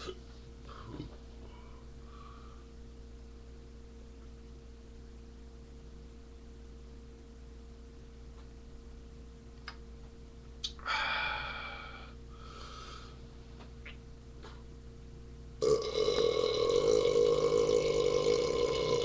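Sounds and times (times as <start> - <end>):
person burping loudly: 15.6 - 19.0.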